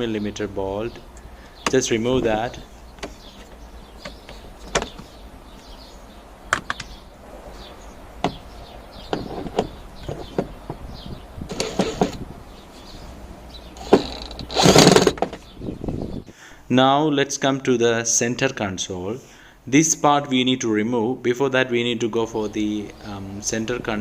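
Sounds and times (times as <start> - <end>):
scraping rustle: 7.3 - 10.7, 11.4 - 15.5.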